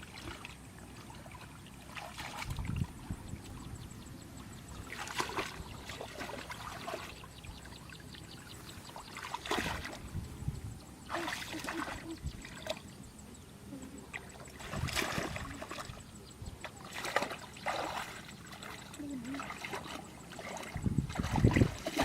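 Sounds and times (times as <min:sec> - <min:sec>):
short splashes: 0:00.0 - 0:02.8, 0:04.9 - 0:07.2, 0:09.0 - 0:10.1, 0:11.1 - 0:12.8, 0:14.2 - 0:16.0, 0:16.6 - 0:22.0
water splashing and trickling: 0:00.0 - 0:03.9, 0:04.6 - 0:10.3, 0:11.0 - 0:12.9, 0:14.0 - 0:22.0.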